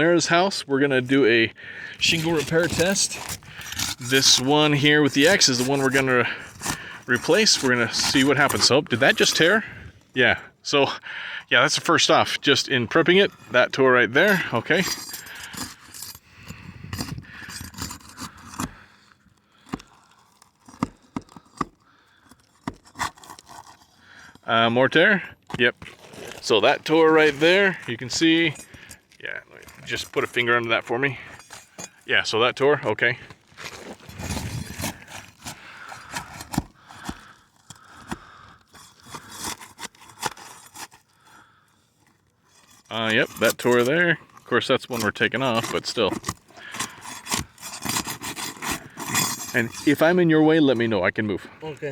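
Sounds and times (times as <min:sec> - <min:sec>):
shingles cracking: 0:01.7 - 0:09.7, 0:14.2 - 0:24.4, 0:25.3 - 0:32.0, 0:33.3 - 0:49.9
shingles scraping: 0:01.7 - 0:50.3.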